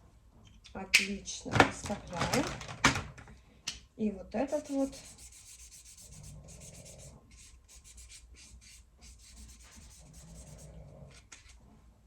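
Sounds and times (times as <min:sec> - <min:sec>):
marker scribbling on paper: 0:04.5 - 0:10.6.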